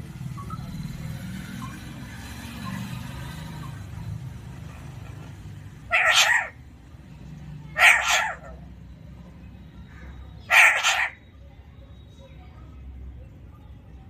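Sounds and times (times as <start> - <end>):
parrot calling loudly: 5.8 - 6.6, 7.7 - 8.6, 10.4 - 11.2.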